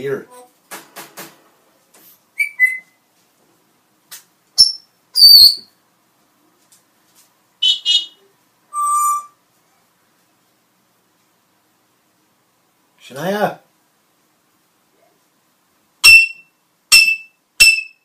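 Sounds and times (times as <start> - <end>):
parrot whistling and calling: 2.4 - 3.0, 4.6 - 5.7, 7.6 - 9.4, 16.0 - 18.0.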